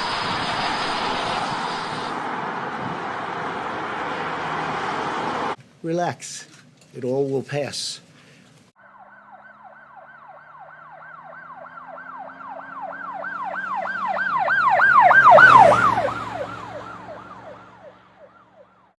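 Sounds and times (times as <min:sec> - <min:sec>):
low vehicle rumble: 0:00.0 - 0:05.6, 0:08.8 - 0:18.8
siren yelping: 0:08.8 - 0:18.9.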